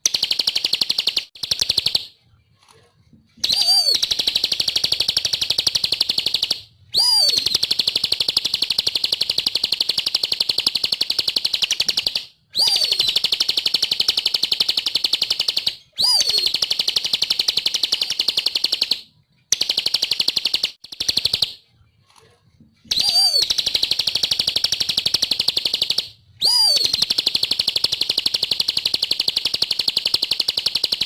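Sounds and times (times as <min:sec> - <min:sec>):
bird trilling: 0:03.4 - 0:08.8, 0:11.6 - 0:13.4, 0:16.0 - 0:16.6, 0:22.9 - 0:27.7.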